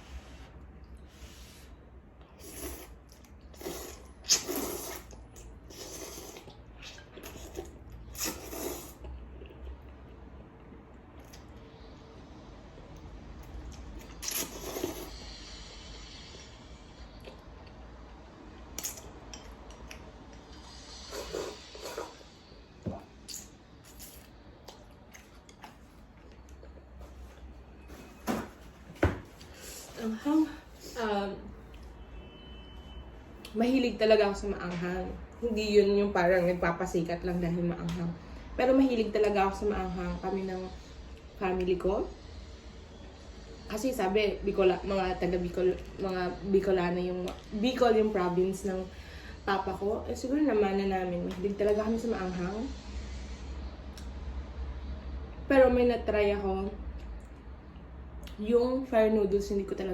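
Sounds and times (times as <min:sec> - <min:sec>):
slurping noodles: 0:02.4 - 0:09.1, 0:14.1 - 0:15.6, 0:20.4 - 0:22.4
chewing: 0:23.3 - 0:27.5.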